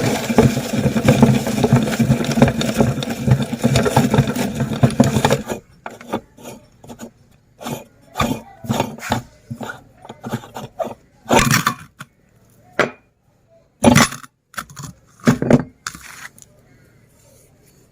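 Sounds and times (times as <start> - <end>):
meat grinder motor cutting off: 0.0 - 5.4
clinks scrapes and knocks: 0.0 - 12.1, 13.8 - 16.5.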